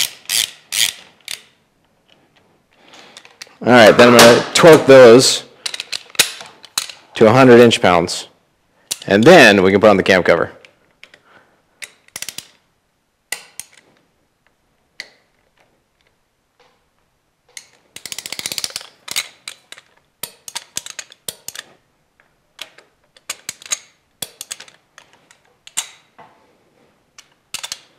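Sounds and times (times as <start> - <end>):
torque wrench ratchet clicks: 0.0 - 1.4.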